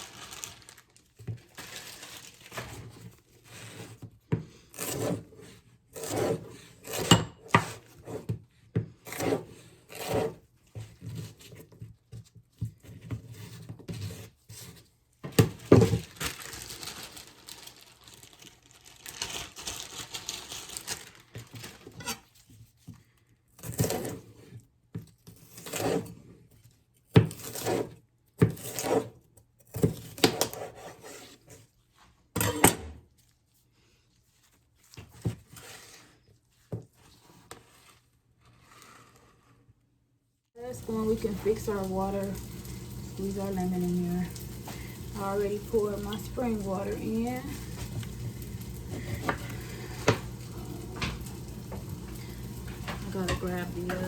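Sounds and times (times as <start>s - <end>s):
scraping and rubbing: 37.0s - 39.7s, 40.6s - 54.0s
utensils knocking on counter: 49.3s - 54.0s.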